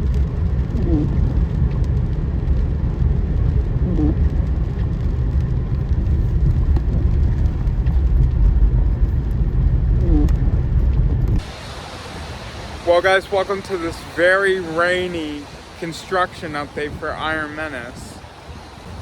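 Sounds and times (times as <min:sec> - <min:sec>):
loud low rumble: 0:00.0 - 0:13.5.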